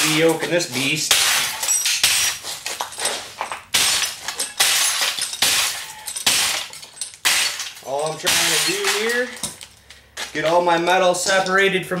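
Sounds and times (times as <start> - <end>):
television being smashed: 1.0 - 9.6.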